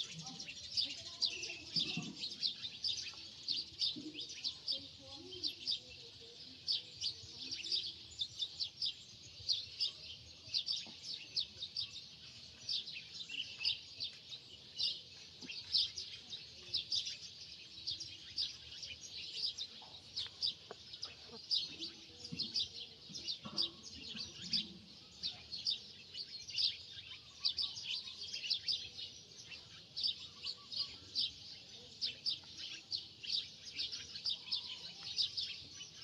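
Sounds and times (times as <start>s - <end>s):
small birds chirping: 0.0s - 36.0s.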